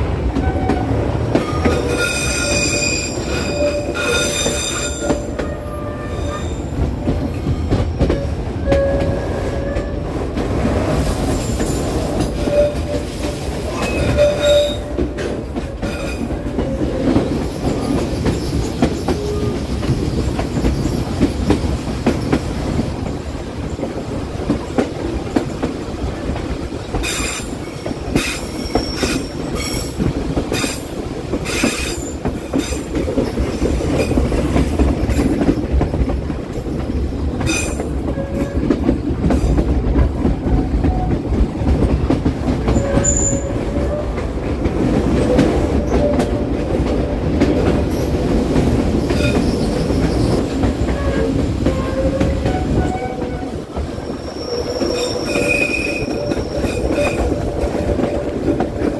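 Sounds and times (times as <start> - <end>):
train rumbling: 0.0 - 58.9
wheel squeal: 1.6 - 6.7, 28.2 - 29.8, 42.7 - 44.0, 54.0 - 57.4.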